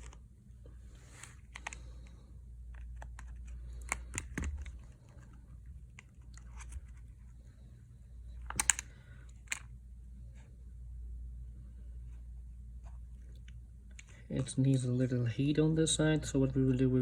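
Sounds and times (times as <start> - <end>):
steady low hum: 0.0 - 17.0
plastic pry card clicking: 8.4 - 8.9.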